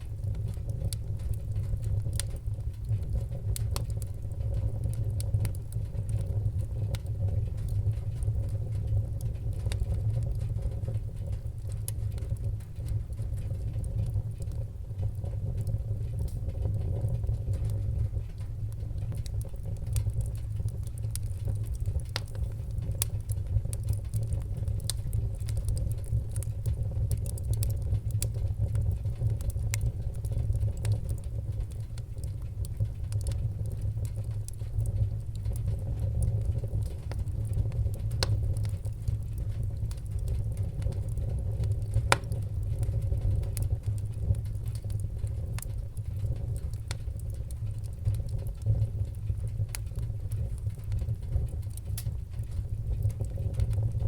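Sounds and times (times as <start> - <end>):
fire crackles and pops: 0.0 - 54.0
wood fire burning: 0.0 - 54.0.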